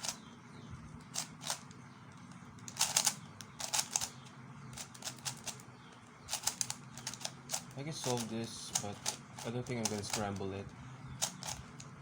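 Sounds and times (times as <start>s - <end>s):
puzzle cube layers clicking: 2.6s - 4.2s, 4.8s - 5.6s, 6.3s - 10.3s.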